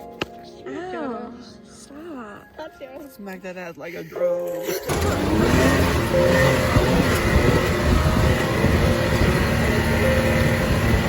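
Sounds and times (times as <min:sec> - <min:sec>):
atv engine running: 0:04.8 - 0:11.0.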